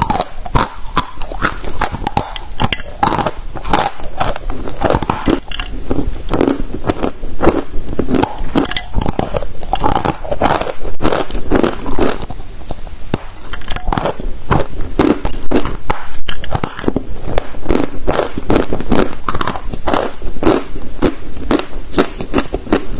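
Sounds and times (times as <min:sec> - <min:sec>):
chalk being chewed: 0:00.0 - 0:22.9.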